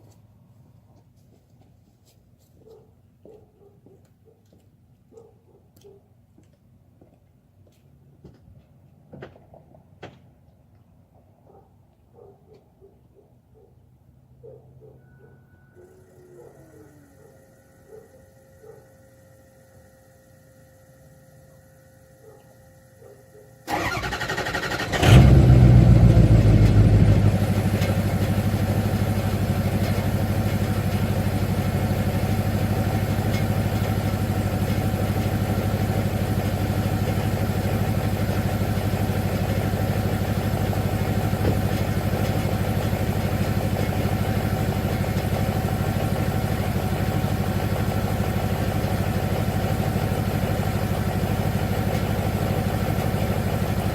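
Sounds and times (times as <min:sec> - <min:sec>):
diesel engine cranking and idling: 0:23.6 - 0:53.9.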